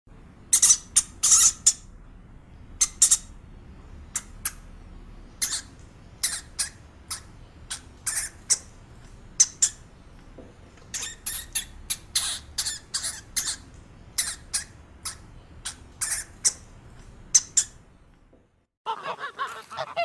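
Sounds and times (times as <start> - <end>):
small animal squeaking: 0.5 - 1.9, 2.8 - 3.4, 5.4 - 8.7, 9.4 - 9.9, 10.9 - 16.7, 17.3 - 17.8.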